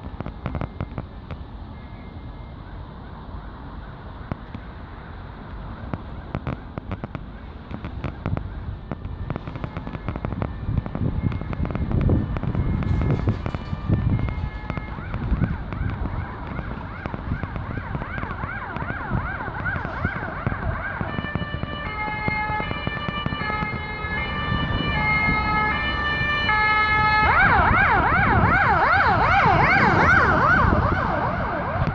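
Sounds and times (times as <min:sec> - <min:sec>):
low traffic rumble: 0:00.0 - 0:31.9
ambulance siren: 0:07.9 - 0:31.9.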